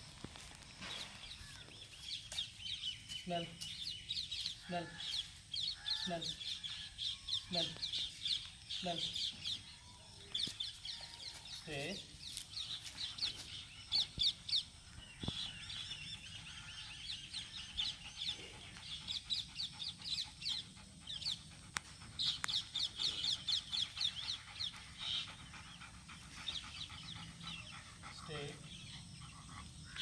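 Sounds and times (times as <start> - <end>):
small birds chirping: 0.3 - 30.0.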